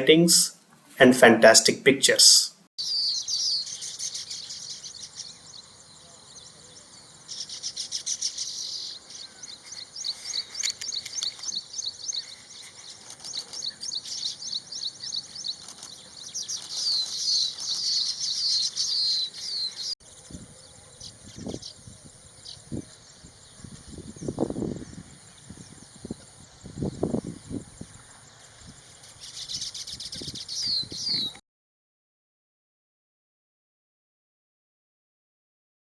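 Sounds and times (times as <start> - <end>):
small birds chirping and twittering: 2.8 - 31.4.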